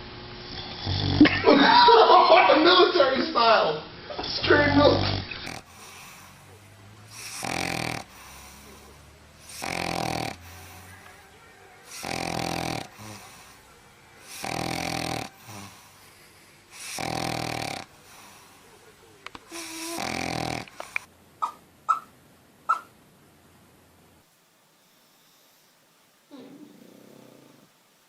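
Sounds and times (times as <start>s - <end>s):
dog snoring: 0.5s - 1.3s, 4.6s - 18.7s, 19.5s - 21.1s, 24.8s - 27.8s.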